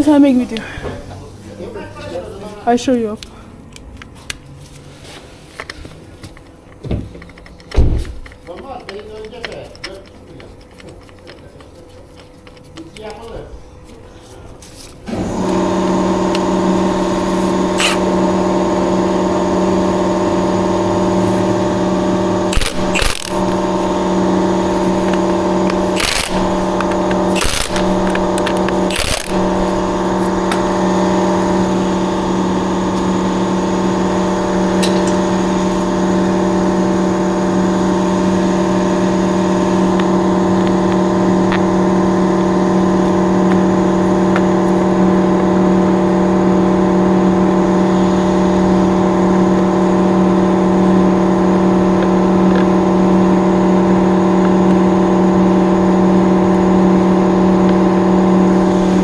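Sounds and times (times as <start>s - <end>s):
machine humming: 15.0s - 59.0s
sharp clicks: 22.5s - 24.0s, 24.7s - 30.8s.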